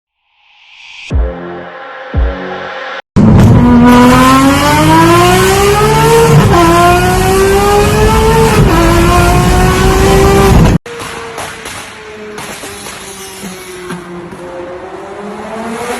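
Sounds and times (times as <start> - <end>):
car engine accelerating through gears: 3.2 - 10.8, 13.7 - 15.9.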